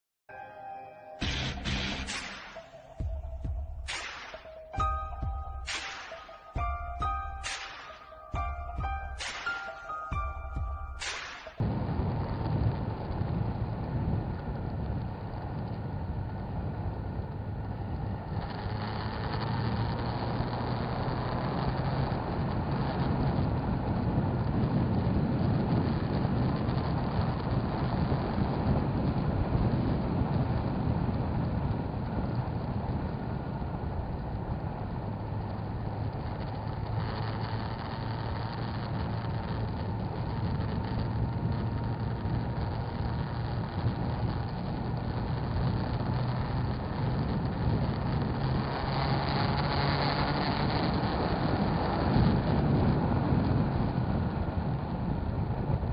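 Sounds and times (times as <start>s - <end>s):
rushing road noise: 1.2s - 55.9s
motorcycle engine hum: 11.6s - 55.9s.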